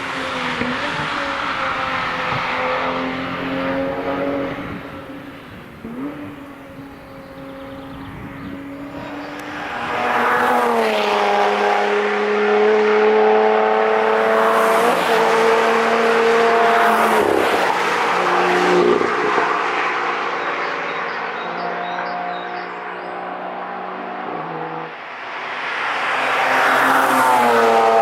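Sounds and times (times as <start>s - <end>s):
cars passing at high revs: 0.0s - 28.0s.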